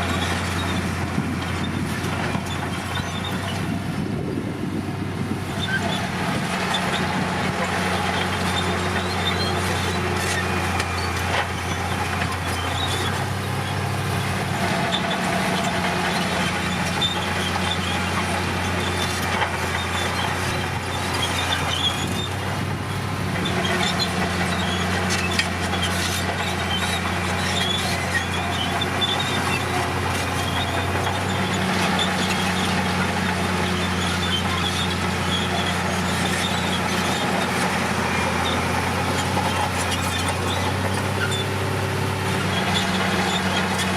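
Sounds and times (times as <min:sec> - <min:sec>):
bulldozer diesel engine: 0:00.0 - 0:43.9
high squeaks and clinks: 0:23.5 - 0:41.6.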